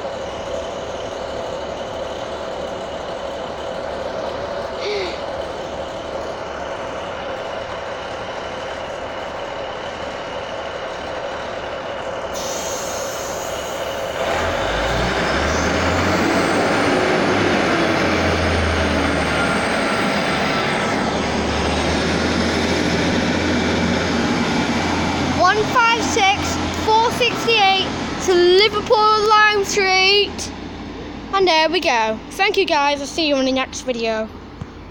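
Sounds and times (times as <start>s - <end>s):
diesel train engines throttling up: 0.0s - 34.9s.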